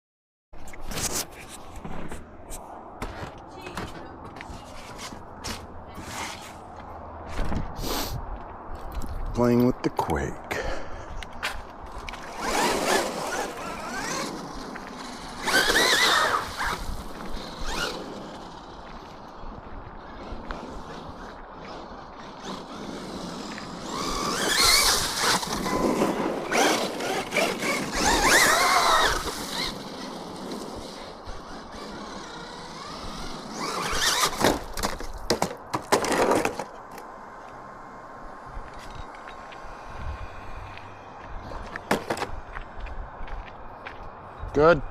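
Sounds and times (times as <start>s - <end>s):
tyres churning ground: 0.6s - 44.8s
electric toy car motor whining: 12.2s - 19.3s, 20.1s - 34.8s
electric motor whining: 22.1s - 29.9s.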